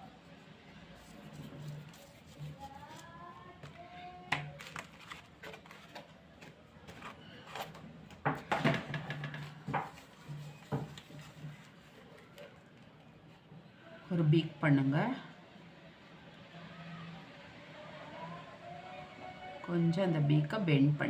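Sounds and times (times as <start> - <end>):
objects knocking on tabletop: 8.2 - 10.0.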